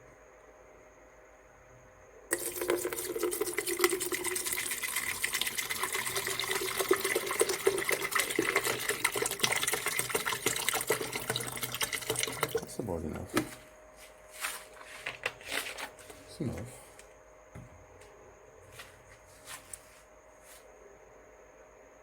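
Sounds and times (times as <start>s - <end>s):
water pouring into a kettle: 2.3s - 12.8s.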